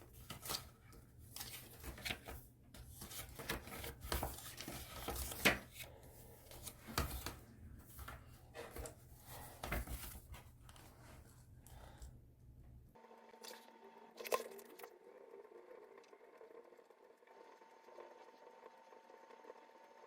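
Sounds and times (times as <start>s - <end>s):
objects handled on a desk: 0.0s - 12.2s.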